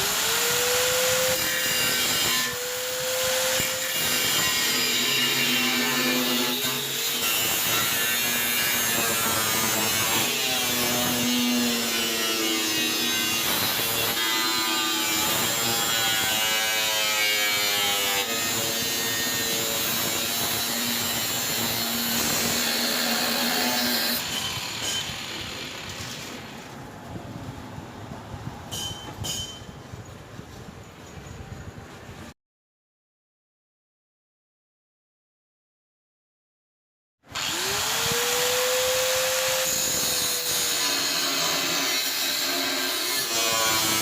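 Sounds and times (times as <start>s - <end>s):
power tool working metal: 0.0s - 26.6s, 37.3s - 44.0s.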